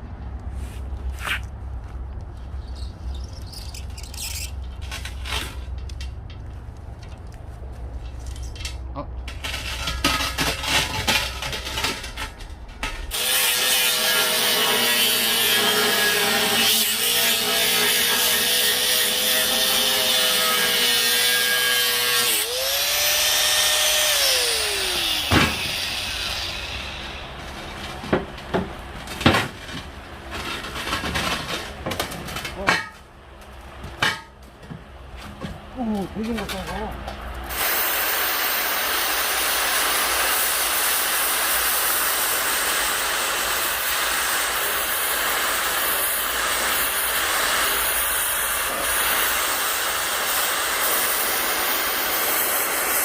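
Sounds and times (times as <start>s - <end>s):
angle grinder on metal: 9.4s - 27.4s, 37.5s - 53.0s.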